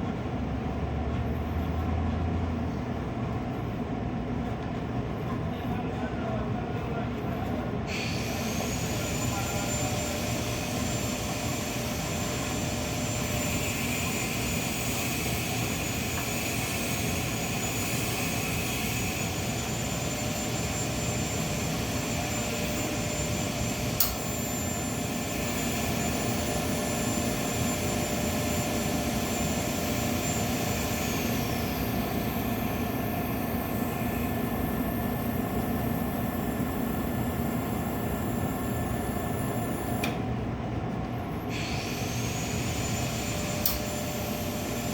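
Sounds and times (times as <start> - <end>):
steady mechanical drone: 0.0 - 44.9
sharp click: 24.0 - 24.2, 43.6 - 43.8.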